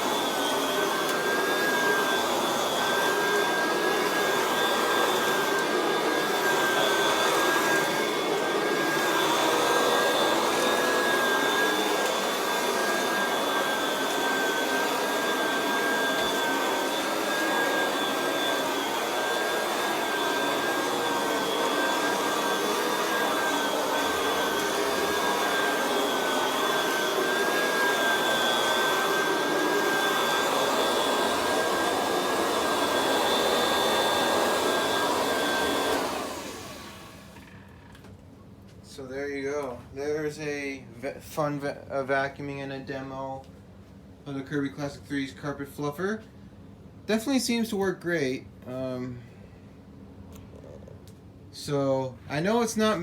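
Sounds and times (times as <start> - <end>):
vacuum cleaner running: 0.0 - 38.2.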